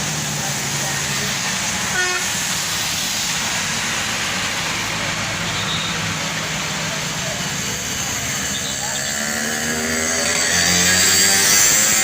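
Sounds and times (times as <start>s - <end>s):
loud background din: 0.0s - 12.0s
bus horn toot: 1.9s - 2.4s, 5.5s - 6.0s.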